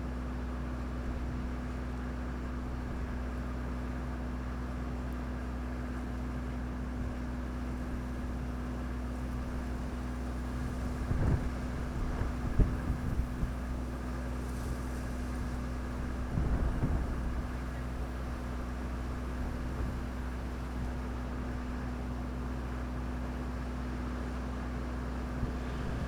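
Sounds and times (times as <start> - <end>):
low mechanical hum: 0.0 - 26.0
wind buffeting microphone: 10.7 - 13.9, 15.2 - 17.7.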